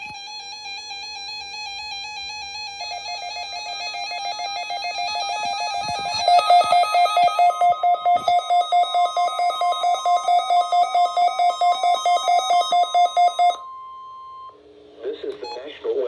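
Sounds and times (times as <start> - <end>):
warbling electronic alarm tones: 0.0 - 14.6
rapid pulsing beeps: 3.3 - 14.5.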